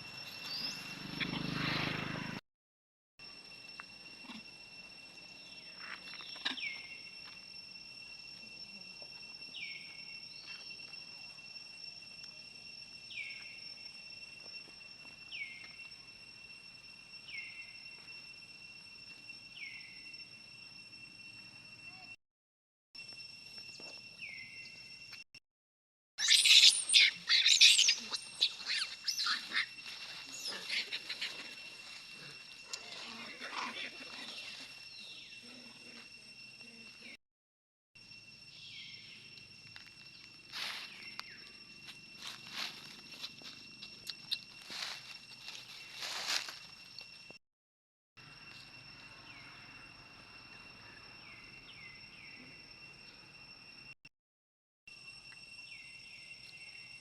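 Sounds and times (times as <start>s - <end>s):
monkey shrieks and squeals: 26.2s - 31.8s, 33.0s - 34.8s.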